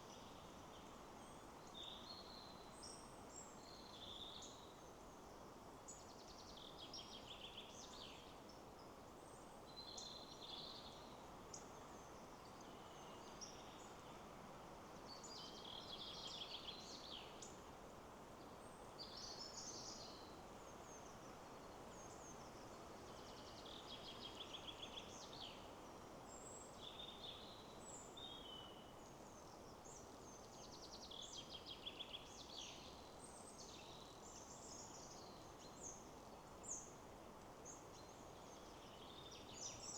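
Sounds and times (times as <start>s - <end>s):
wind in trees: 0.0s - 39.9s
small birds singing: 15.0s - 17.6s, 18.4s - 37.0s, 37.6s - 39.9s.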